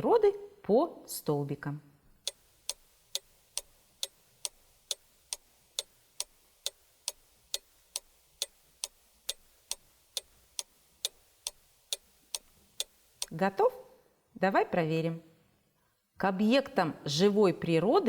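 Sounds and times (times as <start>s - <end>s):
clock ticking: 2.2s - 13.6s.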